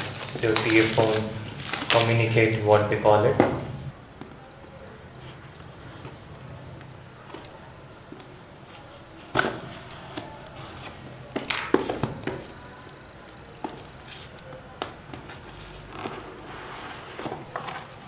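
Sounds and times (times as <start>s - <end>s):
packaging rustling: 0.0s - 3.1s.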